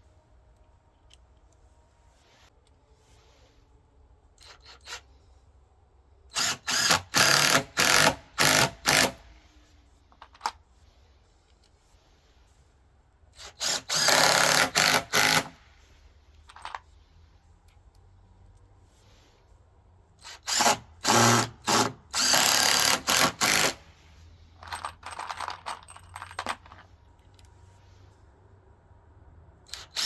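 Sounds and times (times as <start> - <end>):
power drill driving screws: 6.3 - 9.2, 13.4 - 15.6, 20.2 - 23.8, 29.7 - 30.0.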